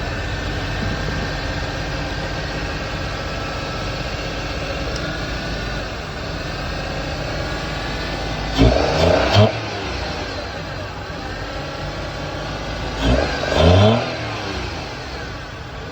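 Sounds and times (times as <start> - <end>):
car engine running: 0.0 - 15.9.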